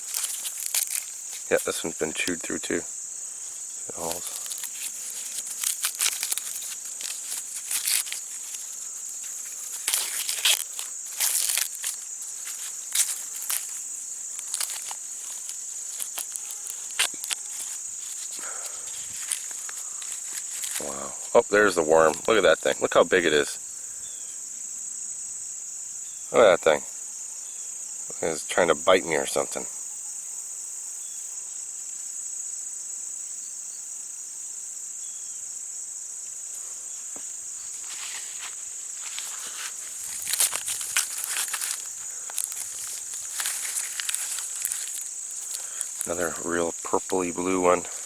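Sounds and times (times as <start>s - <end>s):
corn husks crackling and tearing: 0.0s - 23.6s, 37.2s - 48.0s
high-pitched insect chorus: 0.0s - 48.0s.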